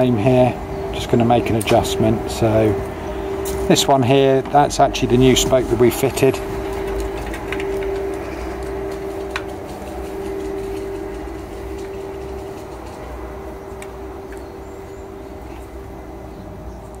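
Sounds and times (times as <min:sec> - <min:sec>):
bicycle wheel whirring: 0:06.3 - 0:14.8.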